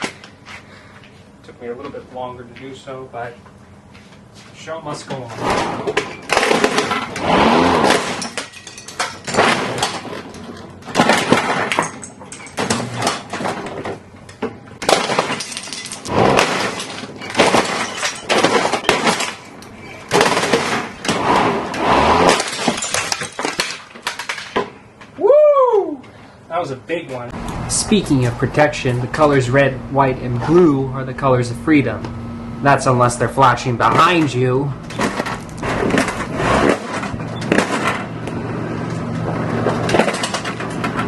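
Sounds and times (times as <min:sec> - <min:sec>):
lawnmower shredding plastic toy: 0:05.4 - 0:12.0, 0:14.8 - 0:24.6, 0:34.9 - 0:38.1, 0:39.4 - 0:41.0.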